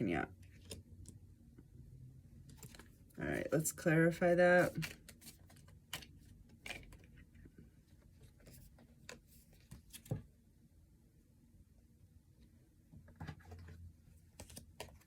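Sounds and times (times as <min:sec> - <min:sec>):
cards being shuffled: 0:02.5 - 0:03.5, 0:04.6 - 0:07.3, 0:08.2 - 0:10.2, 0:14.3 - 0:15.0.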